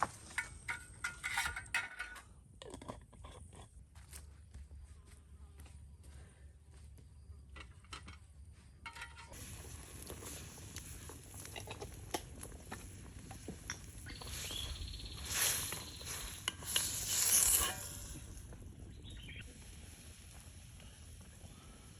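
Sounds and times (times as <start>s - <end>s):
steady hiss with small ticks: 9.4s - 21.9s.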